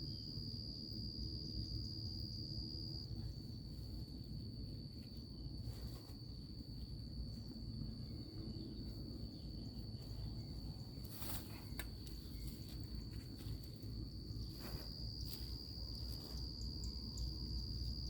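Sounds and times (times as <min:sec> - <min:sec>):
insects droning: 0:00.0 - 0:18.0
hand sifting dry soil: 0:09.8 - 0:16.8.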